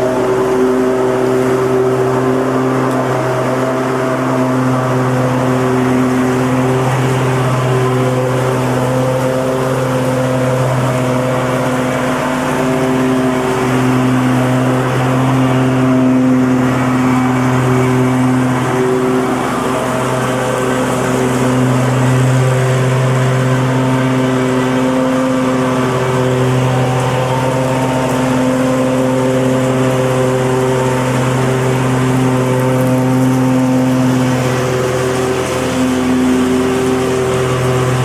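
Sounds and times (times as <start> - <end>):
lawn mower engine running: 0.0 - 38.0.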